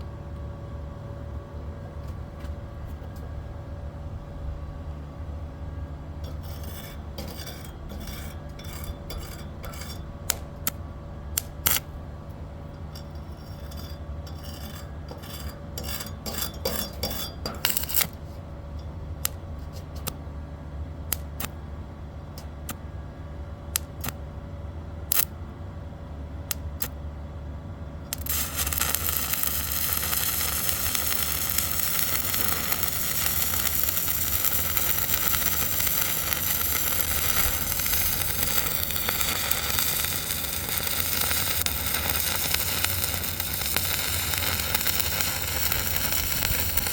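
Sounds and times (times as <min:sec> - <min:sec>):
welding arc crackling and sizzling: 0:06.2 - 0:10.5, 0:11.4 - 0:11.9, 0:13.0 - 0:18.3, 0:28.1 - 0:46.9
welding machine hum: 0:06.2 - 0:18.4, 0:21.1 - 0:21.7, 0:25.1 - 0:25.4, 0:28.1 - 0:46.9.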